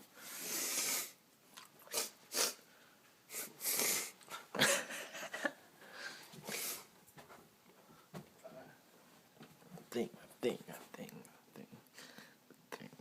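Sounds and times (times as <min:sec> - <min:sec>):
boy sneezing and snorting: 0:01.9 - 0:02.6, 0:03.3 - 0:04.2.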